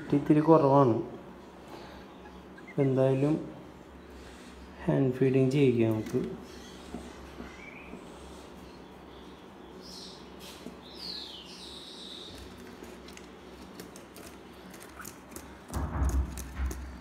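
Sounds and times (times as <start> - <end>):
light clicks and scraping: 12.3 - 17.0.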